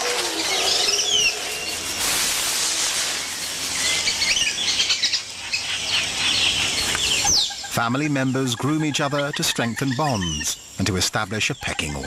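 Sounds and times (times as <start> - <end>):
leaves and branches rustling: 0.0 - 12.0
monkeys chirping: 3.9 - 10.7.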